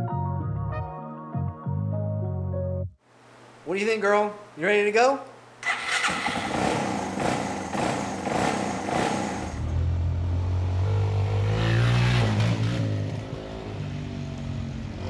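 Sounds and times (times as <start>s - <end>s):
motorcycle engine running and revving: 5.6s - 15.0s.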